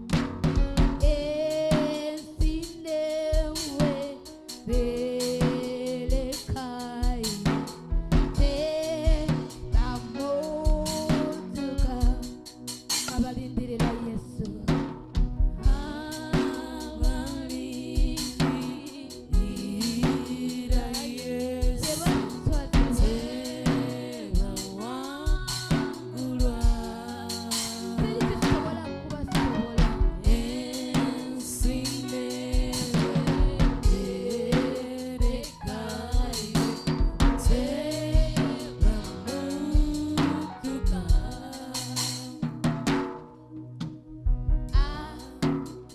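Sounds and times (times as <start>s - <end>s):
drum kit: 0.0s - 45.9s
worship band playing gospel music: 0.0s - 45.9s
person singing: 0.8s - 7.7s, 8.3s - 14.9s, 15.6s - 42.6s, 44.7s - 45.9s.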